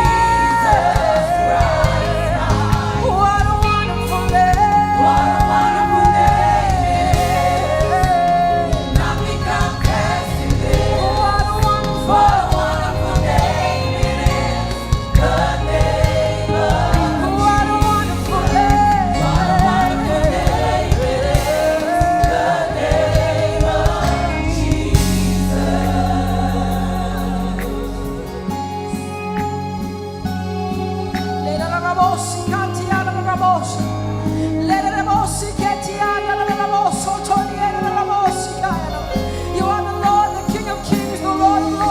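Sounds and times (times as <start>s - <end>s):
choir singing: 0.0s - 32.3s
band playing gospel music: 0.0s - 41.9s.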